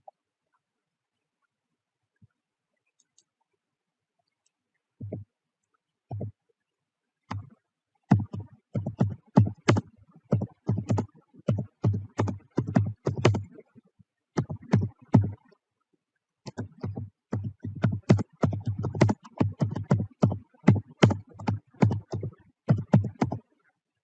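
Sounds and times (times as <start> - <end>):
typing on a keyboard: 8.1 - 13.6, 16.5 - 23.4.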